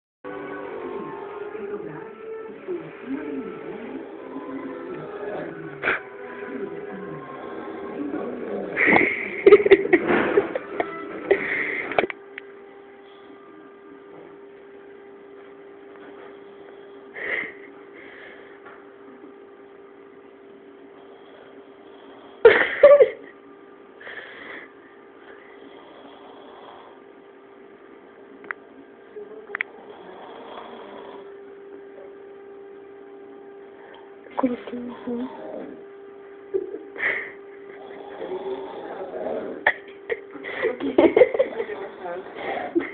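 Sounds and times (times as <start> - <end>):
steady electrical hum: 0.3 - 42.9
person snoring: 2.6 - 9.9, 11.3 - 12.0, 20.9 - 22.6, 24.0 - 27.0, 29.6 - 31.3, 34.7 - 35.8, 36.6 - 39.8, 40.5 - 42.9.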